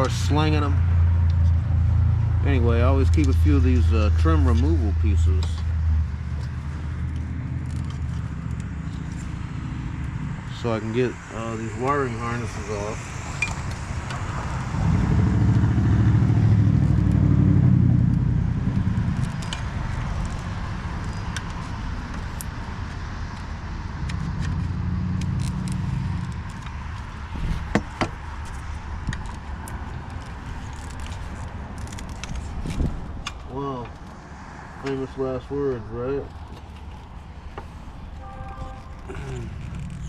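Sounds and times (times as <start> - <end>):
low rumbling noise: 0.0 - 36.4
plastic tool clicking and scraping: 28.4 - 33.4.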